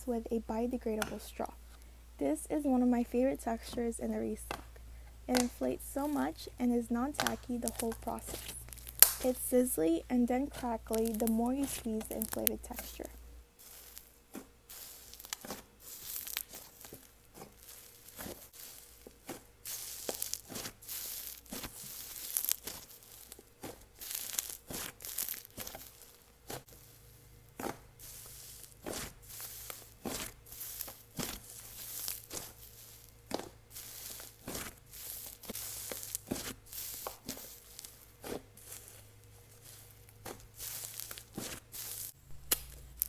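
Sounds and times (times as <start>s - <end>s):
slime crackling pops: 7.0s - 9.4s, 10.5s - 14.1s, 14.8s - 18.6s, 19.3s - 26.7s, 40.2s - 43.0s.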